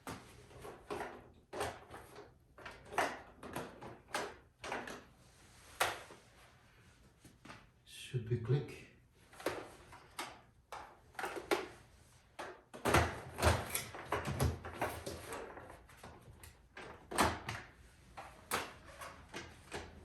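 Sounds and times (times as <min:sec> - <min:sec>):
plastic parts knocking and rattling: 0:00.0 - 0:05.1, 0:09.3 - 0:11.8, 0:12.4 - 0:20.0.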